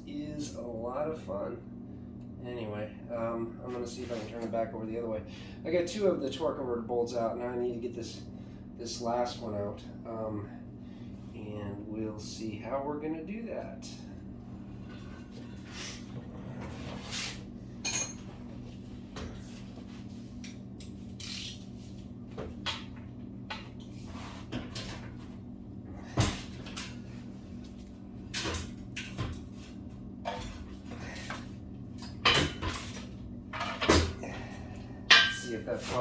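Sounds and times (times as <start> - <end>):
steady low hum: 0.0 - 36.0
hand tools clanking on metal: 33.6 - 36.0.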